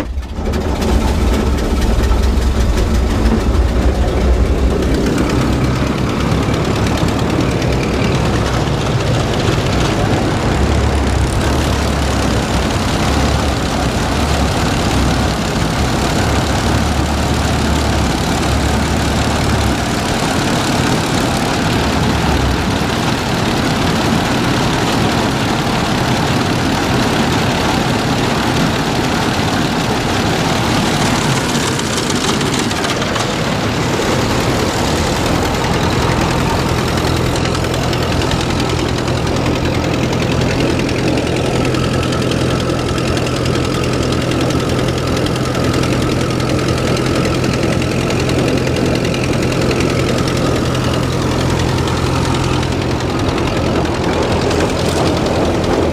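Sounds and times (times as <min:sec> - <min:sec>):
steady low hum: 0:00.0 - 0:24.3
combine harvester running: 0:00.0 - 0:55.9.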